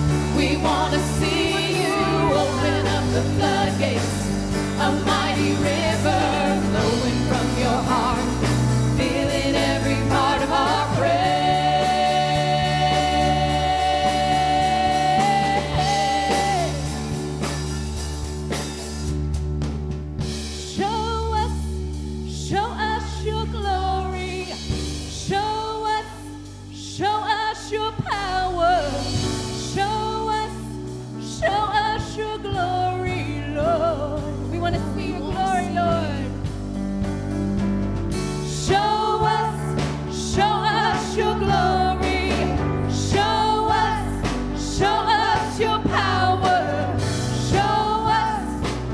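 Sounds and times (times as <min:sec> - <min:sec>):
person singing praise song: 0:00.0 - 0:17.1
band accompaniment: 0:00.0 - 0:23.3, 0:28.0 - 0:48.9.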